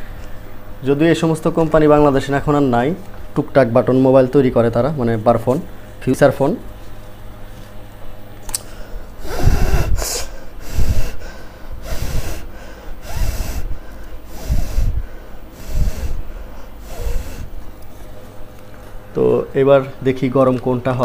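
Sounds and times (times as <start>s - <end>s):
person blowing out in short puffs: 9.2s - 17.6s.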